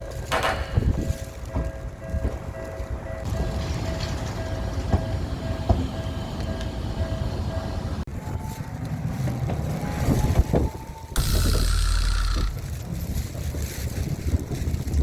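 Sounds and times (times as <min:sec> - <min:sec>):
pulsed crossing warning bell: 0:00.0 - 0:08.1
tram rumbling: 0:00.0 - 0:15.0.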